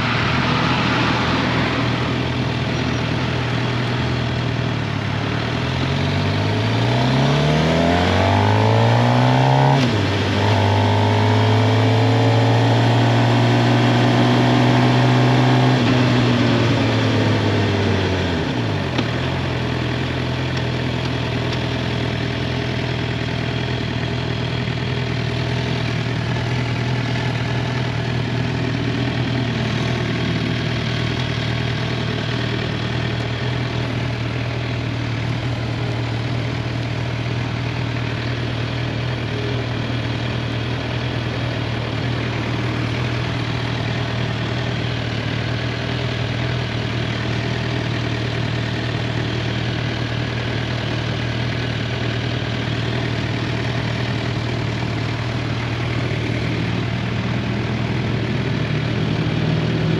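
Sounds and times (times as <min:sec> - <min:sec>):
motorcycle engine accelerating: 0:00.0 - 0:59.9.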